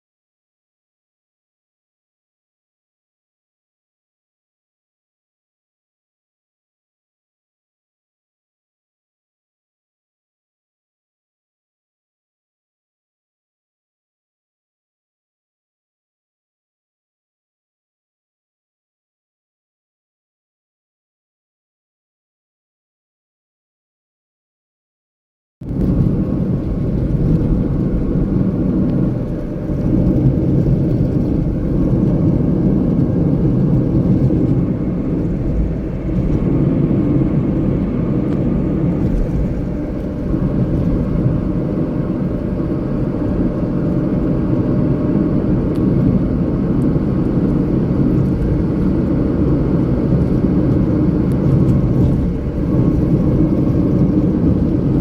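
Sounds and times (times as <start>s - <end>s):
vehicle rumble: 25.6s - 55.0s.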